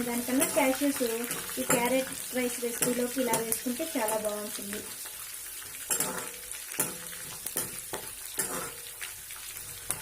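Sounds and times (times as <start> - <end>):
spatula scraping pan: 0.0 - 4.6, 5.7 - 9.1
food sizzling in hot oil: 0.0 - 10.0.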